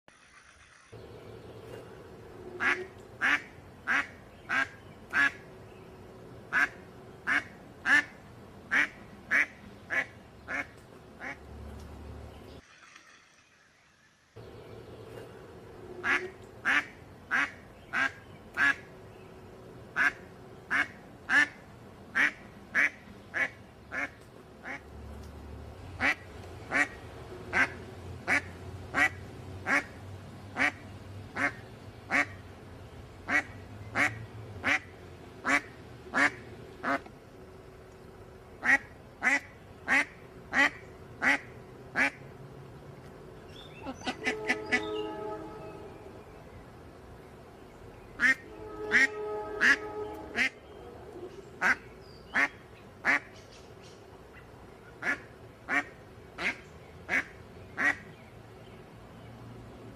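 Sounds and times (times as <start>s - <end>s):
duck quacking: 2.6s - 5.4s, 6.5s - 11.4s, 16.0s - 18.8s, 20.0s - 21.6s, 22.2s - 24.8s, 26.0s - 29.9s, 30.6s - 30.8s, 31.4s - 32.4s, 33.3s - 37.1s, 38.6s - 42.2s, 43.8s - 45.4s, 48.2s - 50.6s, 51.6s - 53.3s, 55.0s - 58.0s.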